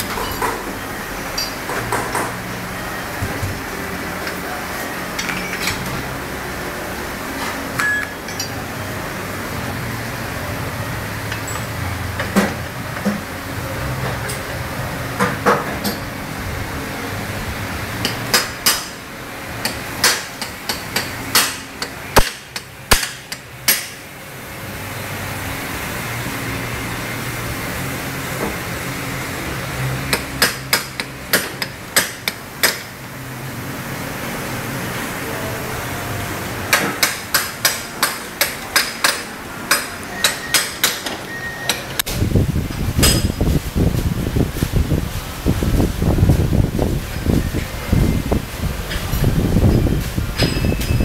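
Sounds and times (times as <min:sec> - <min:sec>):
hammer striking metal: 0:07.8 - 0:08.6, 0:19.6 - 0:24.0, 0:36.7 - 0:41.8.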